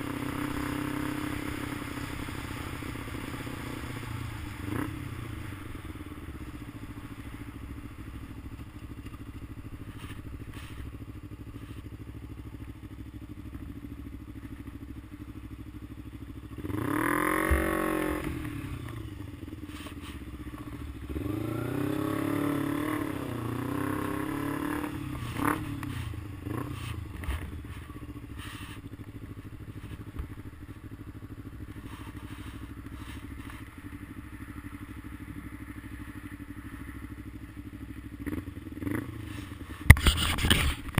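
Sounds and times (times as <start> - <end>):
vehicle engine revving: 0.0 - 7.1, 16.5 - 33.7, 38.2 - 40.9.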